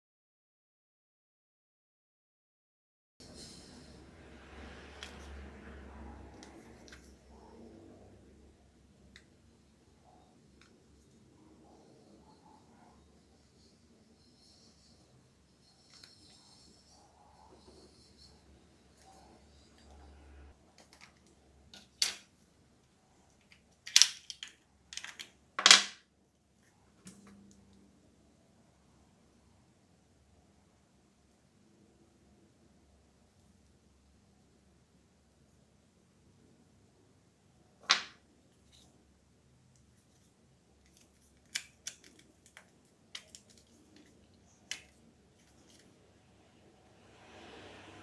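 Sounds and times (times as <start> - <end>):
plastic cracks: 23.8 - 26.0, 40.9 - 44.1
plastic remote clicks and scrapes: 40.9 - 45.9.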